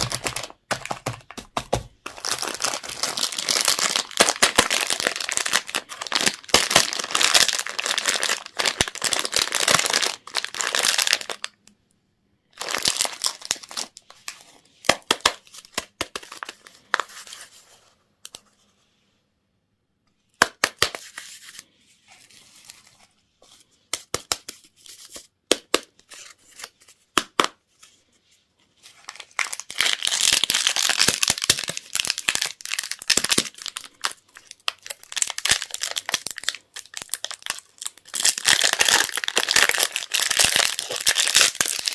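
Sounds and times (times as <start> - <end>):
candy wrappers crinkling: 0.0 - 11.7, 12.4 - 17.5, 28.9 - 41.9.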